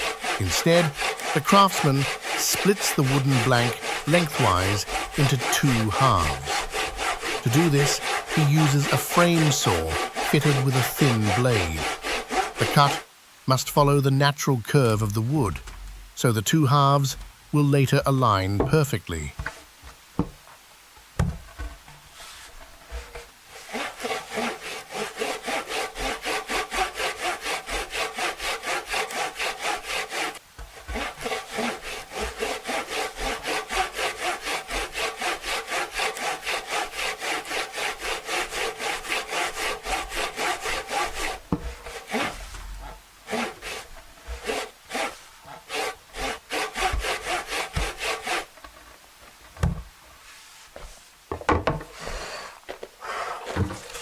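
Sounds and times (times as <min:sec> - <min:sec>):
hand saw cutting wood: 0:00.0 - 0:13.1, 0:21.9 - 0:48.6, 0:51.9 - 0:54.0.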